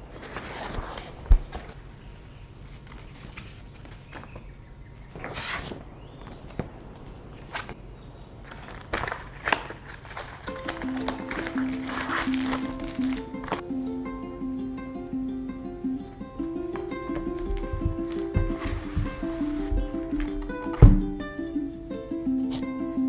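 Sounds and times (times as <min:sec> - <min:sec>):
packaging rustling: 0:08.4 - 0:13.6, 0:16.6 - 0:21.5
heavy thump on desk: 0:17.3 - 0:21.3.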